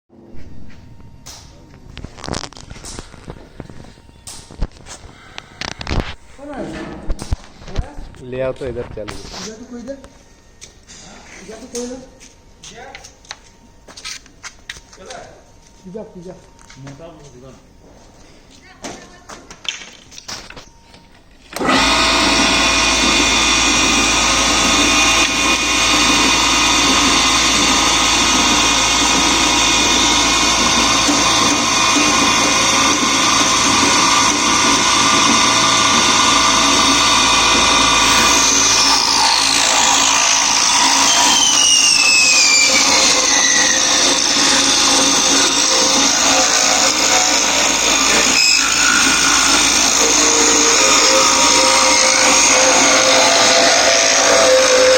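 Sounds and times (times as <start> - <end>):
milling machine high whine: 20.4 - 54.9
tones gliding downward: 21.7 - 54.9.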